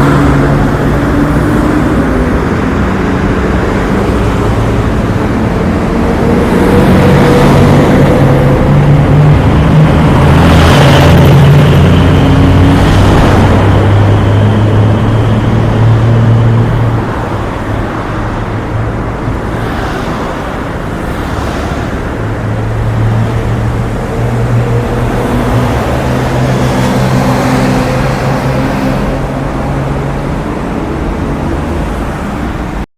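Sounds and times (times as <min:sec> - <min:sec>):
cars passing: 0:00.0 - 0:32.9
road noise: 0:00.0 - 0:32.9
vehicle engine humming: 0:00.0 - 0:32.9.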